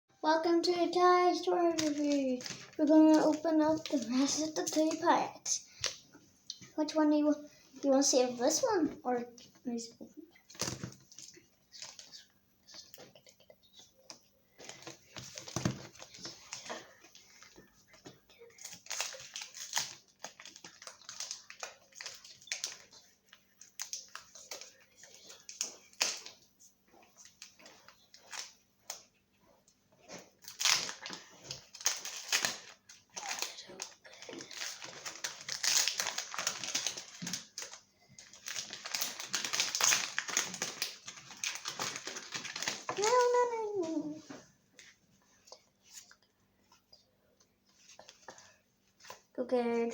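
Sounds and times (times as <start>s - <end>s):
foil wrapper crinkling: 1.4s - 5.2s, 10.4s - 17.7s, 18.5s - 26.4s, 30.2s - 44.1s.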